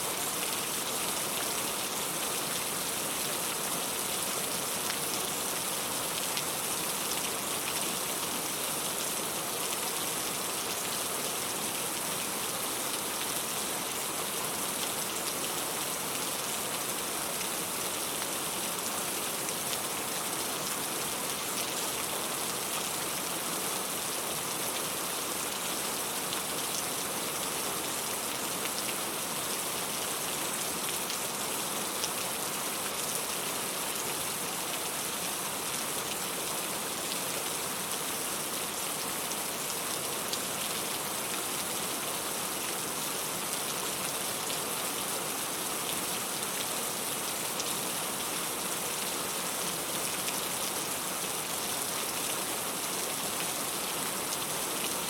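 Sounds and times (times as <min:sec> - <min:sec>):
steady rain falling: 0:00.0 - 0:55.0.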